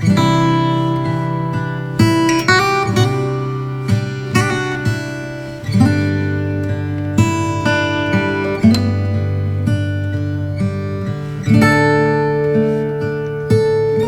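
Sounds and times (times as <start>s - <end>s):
plucked string instrument chords: 0.0s - 14.0s.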